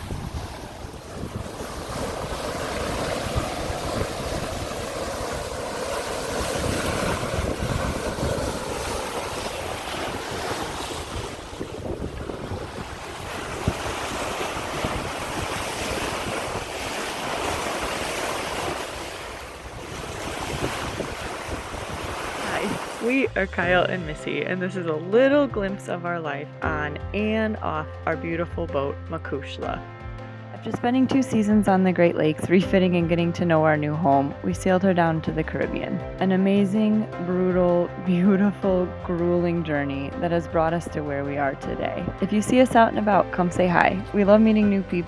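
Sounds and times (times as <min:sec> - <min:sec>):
wind buffeting microphone: 0:00.0 - 0:24.2
sea waves rushing: 0:00.0 - 0:24.4.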